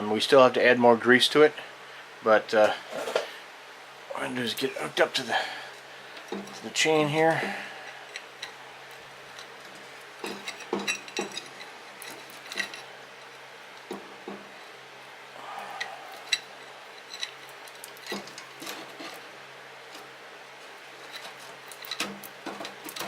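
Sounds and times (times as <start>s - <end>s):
chain scraping: 7.8s - 13.4s, 16.1s - 19.3s, 20.8s - 23.0s
metal chain clinking and rattling: 9.3s - 13.4s, 16.2s - 19.2s, 21.0s - 23.0s.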